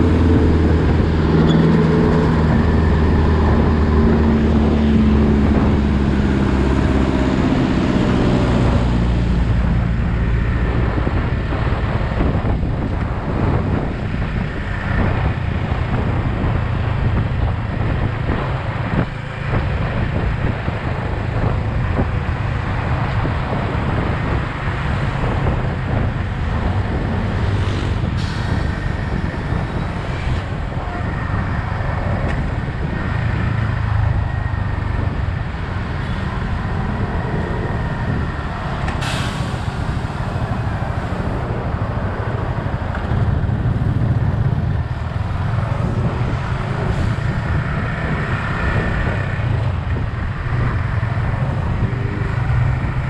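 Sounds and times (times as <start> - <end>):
road and wind noise: 0.0 - 53.0
air brake hisses: 39.0 - 40.3.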